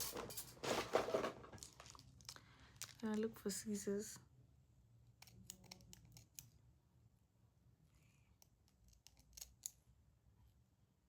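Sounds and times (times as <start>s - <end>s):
scissors clicking: 5.2s - 6.5s, 8.4s - 9.8s.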